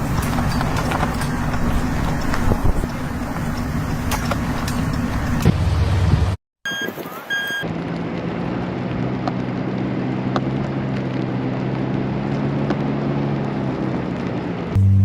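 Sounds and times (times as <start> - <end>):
vehicle engine running: 0.0 - 6.4, 7.7 - 15.0
short high beeps: 6.6 - 7.6.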